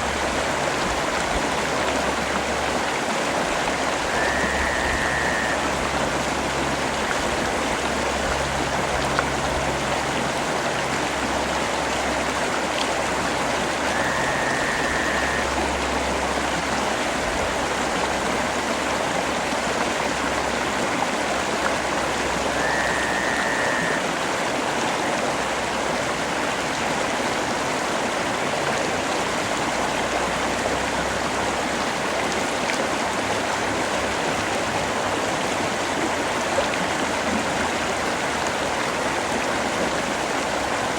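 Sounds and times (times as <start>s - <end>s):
faint short high tone: 4.1s - 5.7s, 13.9s - 15.6s, 22.5s - 24.0s.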